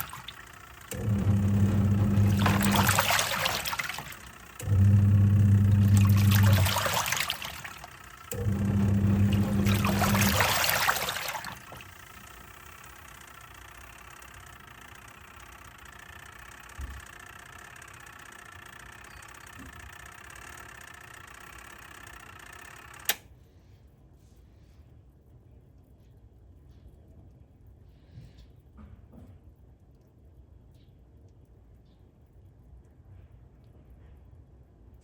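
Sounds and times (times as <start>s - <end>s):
washing machine churning: 0.0s - 23.2s
washing machine motor hum: 0.0s - 23.4s.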